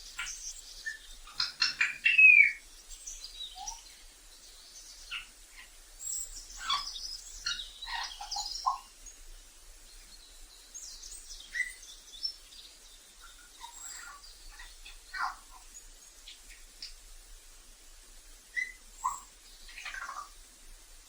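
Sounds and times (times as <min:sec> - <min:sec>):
parrot whistles chirps and squawks: 0:00.9 - 0:02.6, 0:18.5 - 0:20.3.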